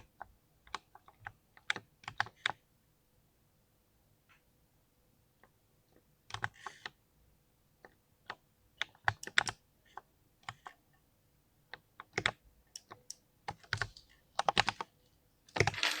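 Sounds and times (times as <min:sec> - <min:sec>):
typing on mechanical keyboard: 0:12.0 - 0:14.8.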